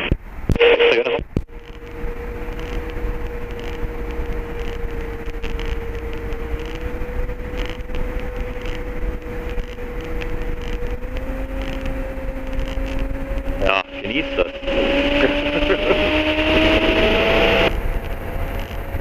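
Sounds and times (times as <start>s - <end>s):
engine and propeller drone: 0.0s - 19.0s
wind rush in cockpit: 0.0s - 19.0s.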